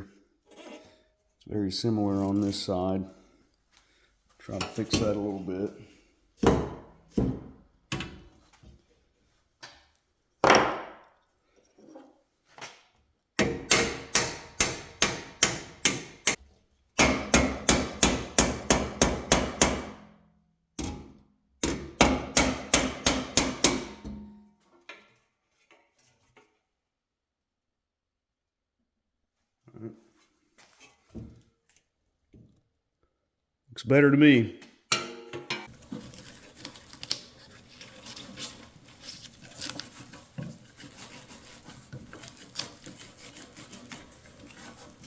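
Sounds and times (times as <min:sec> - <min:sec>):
hammer tapping sheet metal: 0:13.4 - 0:16.4, 0:21.6 - 0:24.2.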